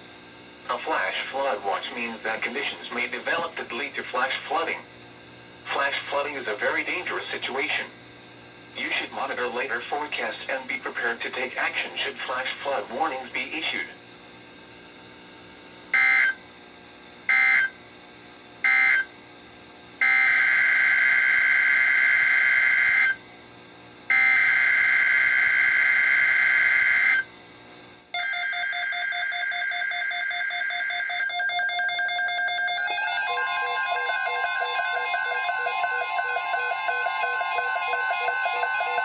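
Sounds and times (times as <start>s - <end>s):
weather radio alarm beeping: 16.0s - 16.4s, 28.2s - 39.0s.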